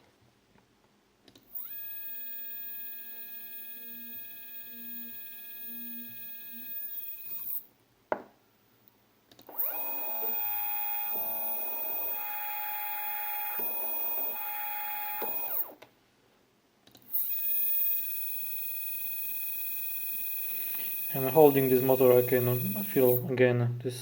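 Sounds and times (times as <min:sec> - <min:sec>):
stepper motor whine: 0:01.5 - 0:07.6, 0:09.5 - 0:15.8, 0:17.1 - 0:23.3.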